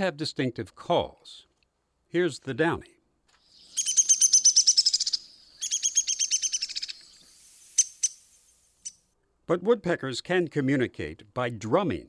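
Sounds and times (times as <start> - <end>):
woodpecker calling: 3.6 - 9.0.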